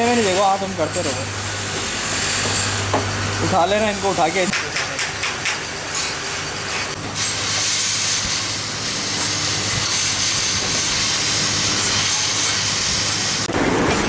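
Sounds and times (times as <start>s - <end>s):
machinery hissing: 6.4s - 14.0s.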